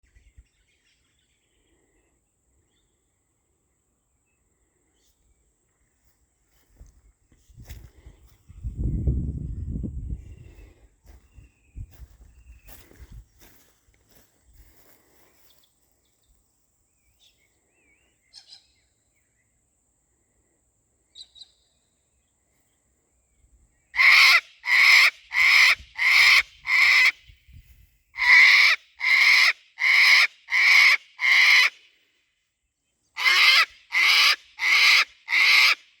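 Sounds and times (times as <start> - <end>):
faint bird chirps: 0.0 - 24.0
cockatoo screeching: 24.0 - 27.2, 28.2 - 31.7, 33.2 - 35.8.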